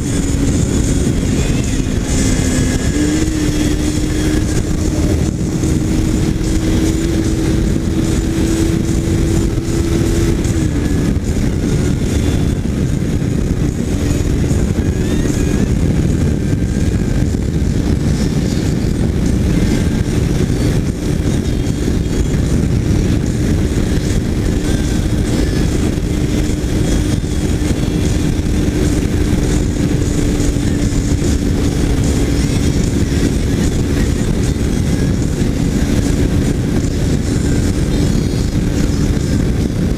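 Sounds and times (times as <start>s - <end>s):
motorcycle engine cruising: 0.0s - 39.9s.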